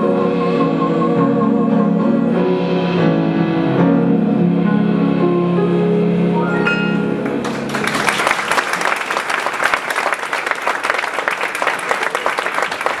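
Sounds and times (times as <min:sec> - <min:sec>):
song accompaniment held notes: 0:00.0 - 0:08.6
audience applause: 0:07.2 - 0:13.0.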